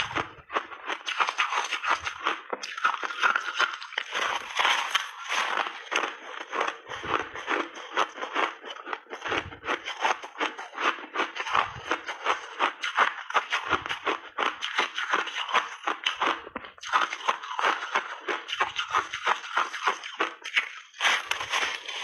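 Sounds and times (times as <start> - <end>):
chewing ice crunches: 0.0 - 22.0.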